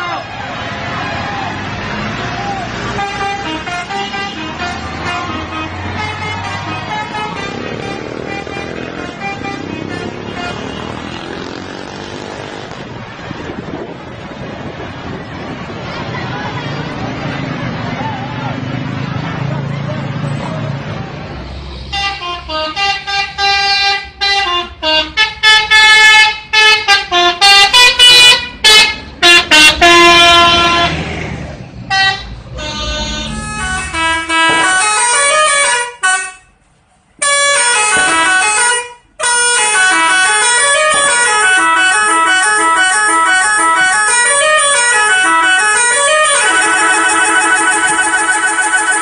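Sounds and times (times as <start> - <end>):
bus engine rumbling: 0.0 - 49.0
musical bus horn tooting: 2.2 - 11.5, 21.7 - 31.1, 31.9 - 36.6, 37.2 - 49.0.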